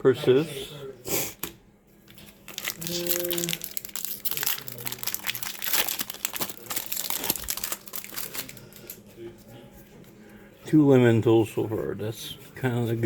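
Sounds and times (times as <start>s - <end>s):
plastic wrapper crinkling: 2.1s - 9.0s.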